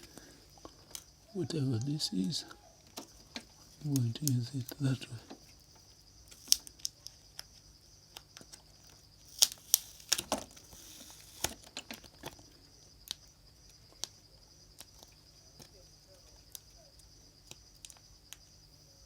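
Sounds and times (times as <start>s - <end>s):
tape crinkling: 6.3s - 6.8s, 9.3s - 11.6s.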